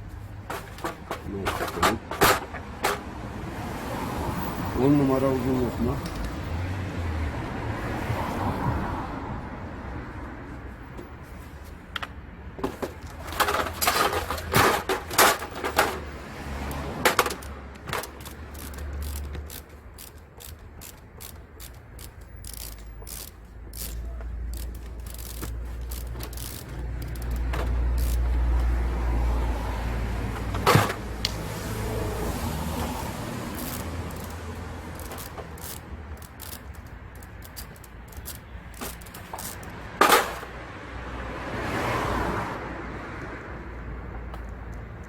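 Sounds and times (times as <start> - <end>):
ratchet socket clicking: 6.0 - 6.4, 13.0 - 28.7, 33.4 - 40.4
metal tool clinks and knocks: 12.0 - 28.4.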